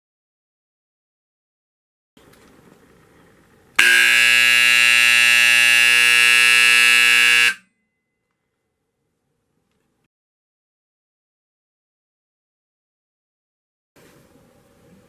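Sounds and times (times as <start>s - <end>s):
fire alarm horn buzzing: 3.8s - 7.8s.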